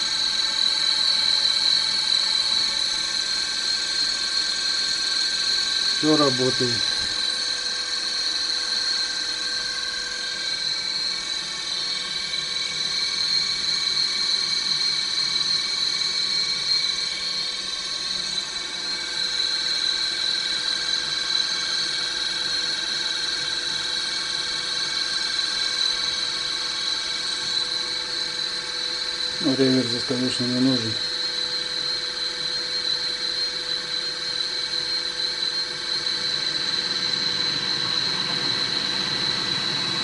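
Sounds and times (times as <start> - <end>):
electric motor whining: 6.0 - 7.4.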